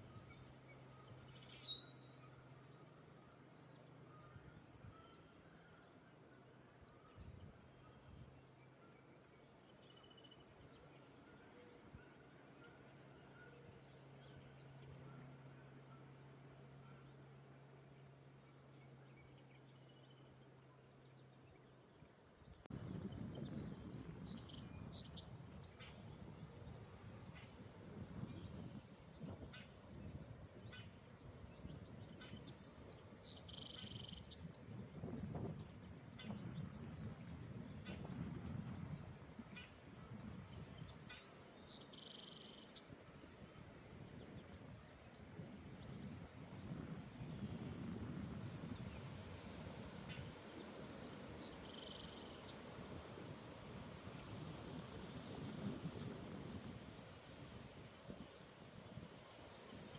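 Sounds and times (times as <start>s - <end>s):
bird chirps: 0.0s - 2.4s, 23.4s - 26.1s
wind rumble on microphone: 22.4s - 59.9s.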